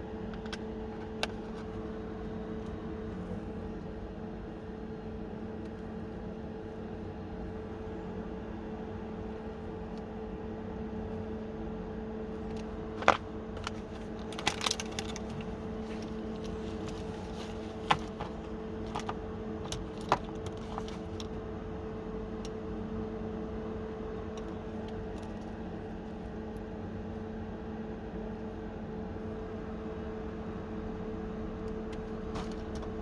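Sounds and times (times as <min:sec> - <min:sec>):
steady low hum: 0:00.0 - 0:33.0
small parts clicking and knocking: 0:12.4 - 0:21.3.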